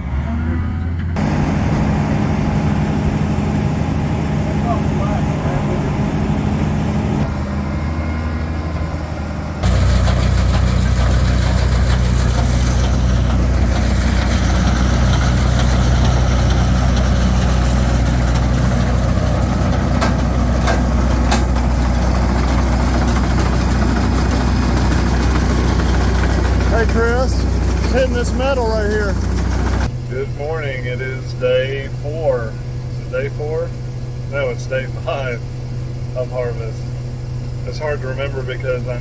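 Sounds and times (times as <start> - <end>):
heavy machinery engine running: 0.0 - 39.0.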